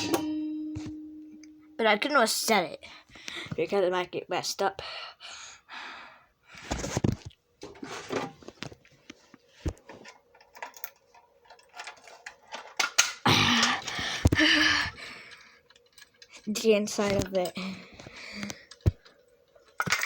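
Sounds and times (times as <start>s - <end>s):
rustling noise: 6.6s - 10.1s.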